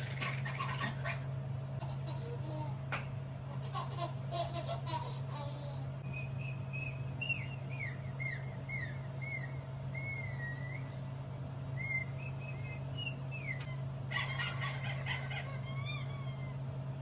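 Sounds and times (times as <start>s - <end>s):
steady low hum: 0.0s - 17.0s
falling whistles: 6.0s - 11.0s, 11.7s - 13.7s.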